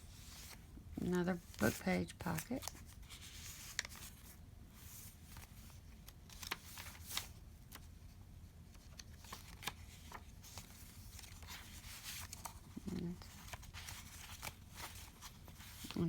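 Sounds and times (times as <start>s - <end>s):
paper rustling: 1.2s - 8.1s, 8.7s - 16.0s.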